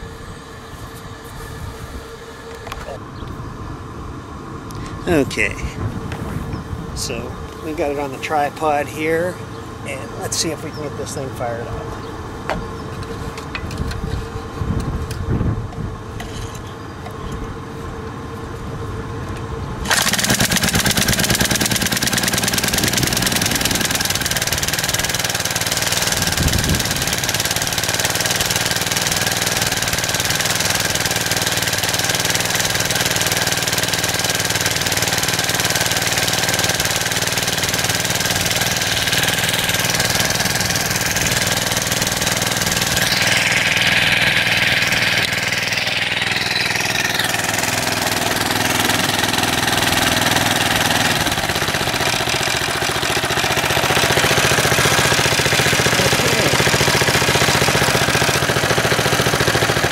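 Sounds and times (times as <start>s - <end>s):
small engine starting and running: 19.8s - 59.9s.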